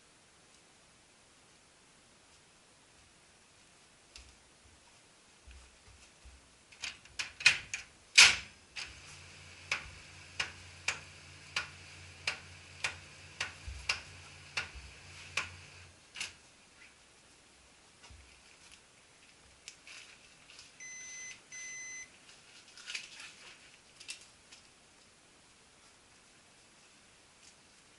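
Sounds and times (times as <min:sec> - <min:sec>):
sharp clicks from copier: 0:06.8 - 0:16.4
copier humming: 0:08.2 - 0:16.0, 0:20.8 - 0:22.1.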